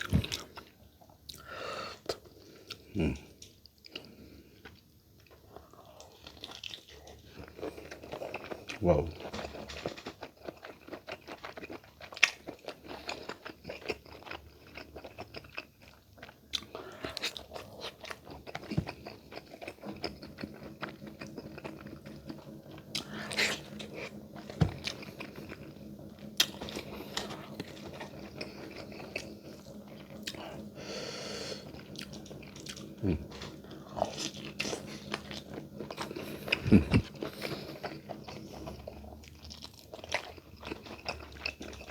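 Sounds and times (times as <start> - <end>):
chewing and lip-smacking: 0.0 - 41.9
low steady hum: 16.5 - 41.9.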